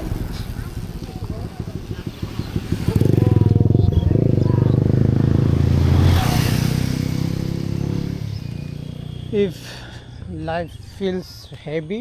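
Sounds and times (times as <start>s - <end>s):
small vehicle engine passing by: 0.0s - 9.5s.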